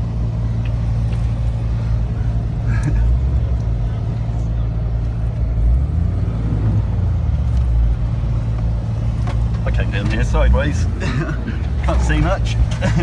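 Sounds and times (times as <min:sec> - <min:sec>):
car engine droning: 0:00.0 - 0:13.0.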